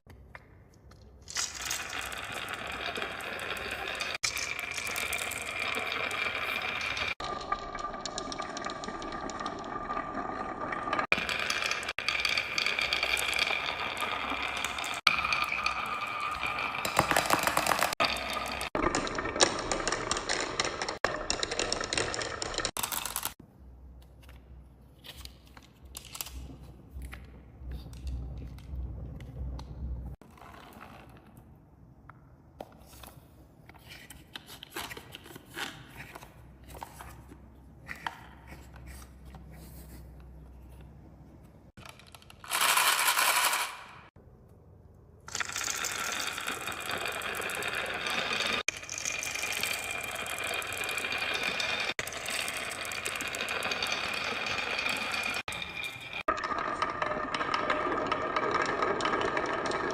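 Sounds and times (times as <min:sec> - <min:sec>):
marbles clicking on wood: 0:01.3 - 0:23.4, 0:41.8 - 0:44.0, 0:45.3 - 0:59.9.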